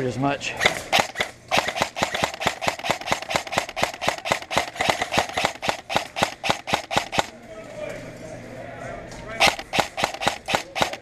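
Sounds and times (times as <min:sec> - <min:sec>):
airsoft guns firing: 0:00.6 - 0:07.3, 0:09.4 - 0:11.0.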